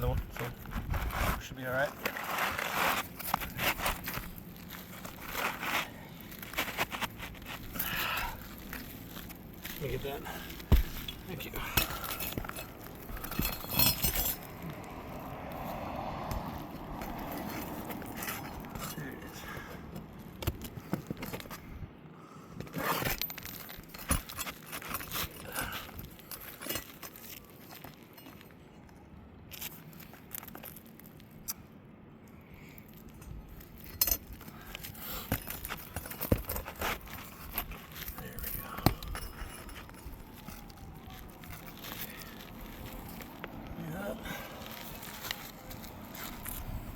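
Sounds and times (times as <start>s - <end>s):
scraping on shingles: 0.0s - 21.6s, 34.3s - 46.9s
brittle shingles crackling: 0.3s - 15.7s, 22.8s - 28.6s, 32.6s - 46.9s
metal clinks: 6.3s - 15.2s, 33.0s - 43.4s.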